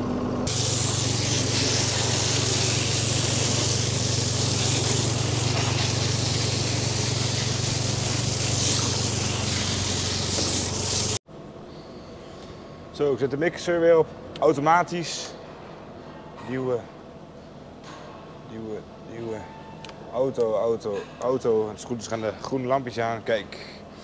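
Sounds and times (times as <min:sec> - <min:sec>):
constant low hum: 0:00.0 - 0:24.0
pressure washer spraying hiss: 0:00.5 - 0:11.2.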